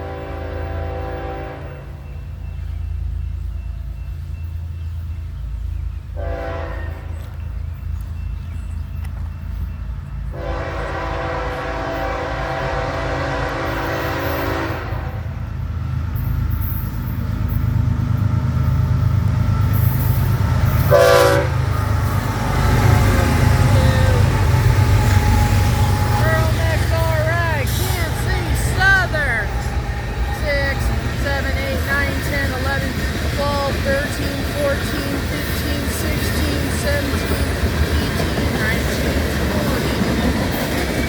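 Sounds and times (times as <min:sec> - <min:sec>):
train air horn blasts: 0:00.0 - 0:02.0, 0:06.2 - 0:07.2, 0:10.3 - 0:15.4, 0:20.7 - 0:37.4
locomotive diesel engine rumble: 0:00.0 - 0:41.0.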